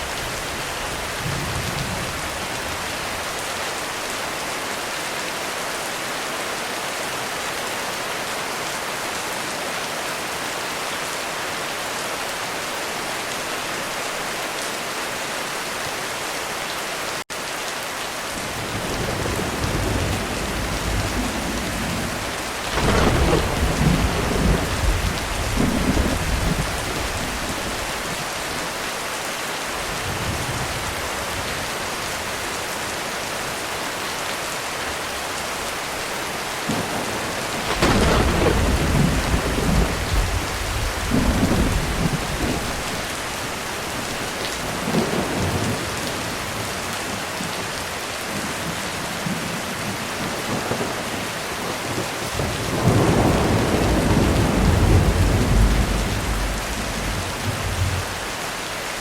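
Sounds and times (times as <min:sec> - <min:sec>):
heavy rain on a roof: 0:00.0 - 0:59.0
thunder rumbling: 0:18.6 - 0:28.2, 0:36.7 - 0:46.6, 0:50.5 - 0:58.3.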